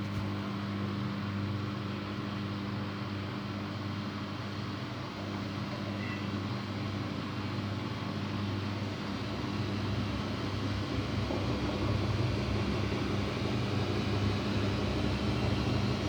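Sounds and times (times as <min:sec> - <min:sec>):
washing machine spinning: 0:07.8 - 0:16.0.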